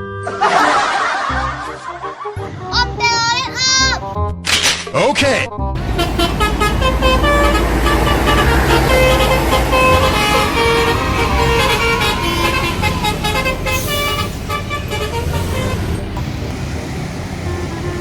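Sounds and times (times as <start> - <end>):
bus horn playing a tune: 5.8 - 18.0
heavy vehicle engine rumble: 5.8 - 18.0.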